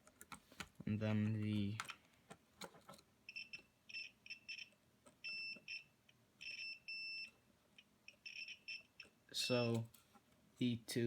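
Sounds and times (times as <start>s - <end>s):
multimeter beeps: 3.3s - 7.4s, 8.1s - 9.8s.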